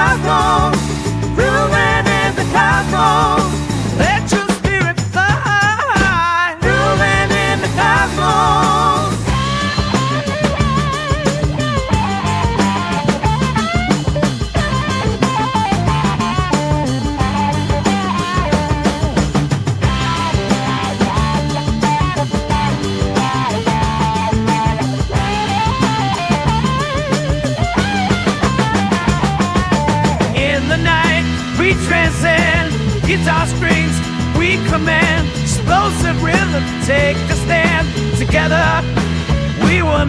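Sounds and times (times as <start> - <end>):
bass line: 0.0 - 4.5, 6.0 - 40.0
drum kit beat: 0.0 - 40.0
electric lead guitar melody: 9.0 - 34.4.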